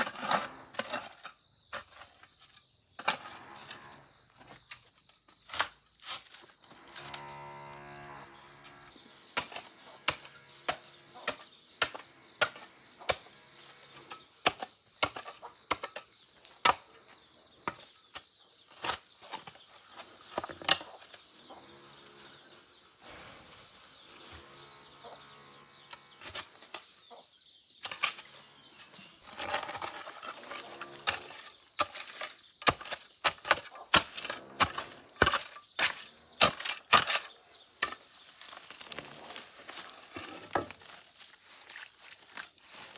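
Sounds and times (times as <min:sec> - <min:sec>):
hand tool chopping into soil: 0:09.4 - 0:16.9, 0:29.2 - 0:42.9.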